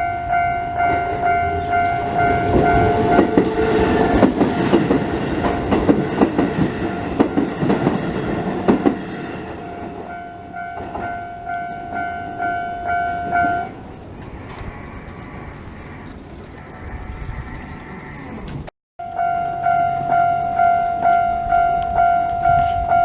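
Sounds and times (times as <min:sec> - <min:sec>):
level crossing warning bell ringing: 0:00.0 - 0:04.4, 0:05.4 - 0:14.0, 0:19.0 - 0:23.0
wheels clacking over rail joints: 0:00.0 - 0:18.7
train passing: 0:00.0 - 0:23.0.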